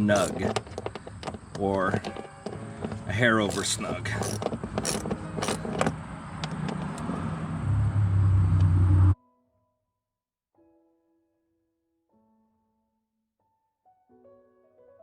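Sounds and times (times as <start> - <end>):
sharp knocks and clicks: 0.0 - 7.2
faint piano notes: 0.0 - 7.3
engine running low: 0.0 - 9.2.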